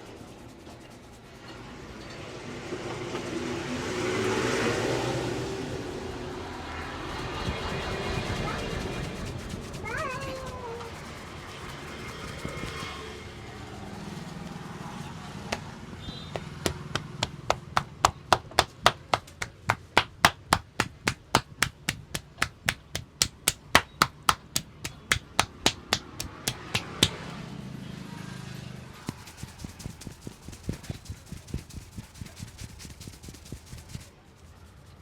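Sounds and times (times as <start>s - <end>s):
hands slapping on head: 15.5s - 15.7s, 16.3s - 27.3s, 29.0s - 34.1s.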